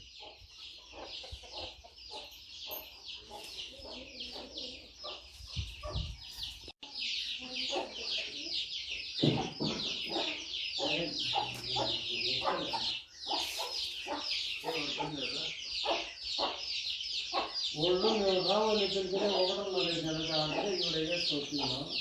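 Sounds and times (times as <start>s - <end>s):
chickens clucking: 0.0s - 22.0s.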